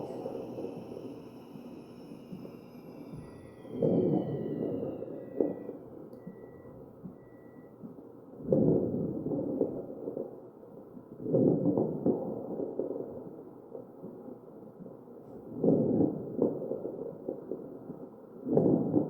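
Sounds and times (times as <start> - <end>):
ventilator breath rushing: 0.0 - 5.8.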